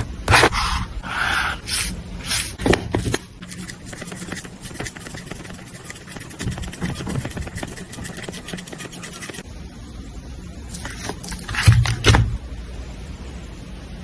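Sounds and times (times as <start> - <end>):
paper rustling: 2.6 - 9.4
pen scratching on paper: 3.4 - 9.4.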